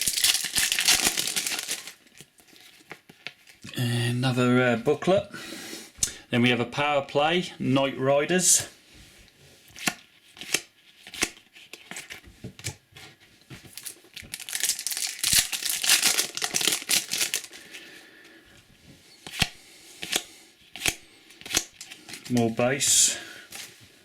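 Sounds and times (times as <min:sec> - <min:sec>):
foil packet crinkling and tearing: 0:00.0 - 0:03.6, 0:13.8 - 0:17.8, 0:20.8 - 0:22.6.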